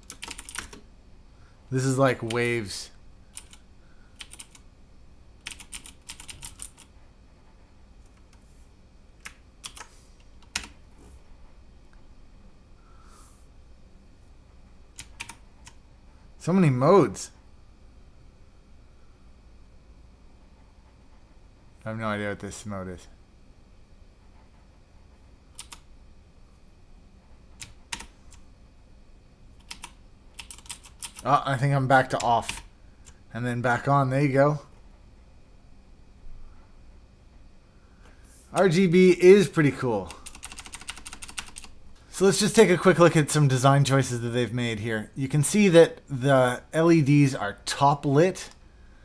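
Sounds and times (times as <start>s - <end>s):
mechanical keyboard key presses: 0.0s - 0.8s, 5.4s - 6.9s, 25.6s - 25.8s, 29.6s - 31.2s, 40.2s - 41.7s.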